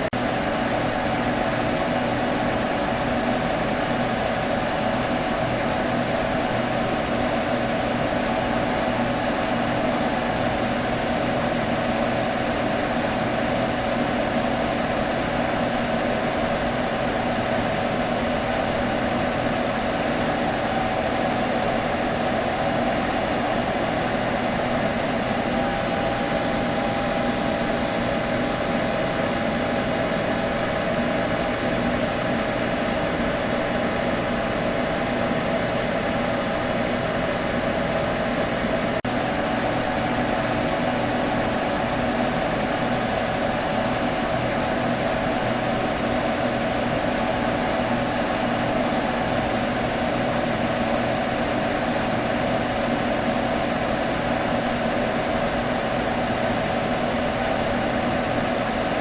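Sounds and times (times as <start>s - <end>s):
computer fan humming: 0.0s - 59.0s.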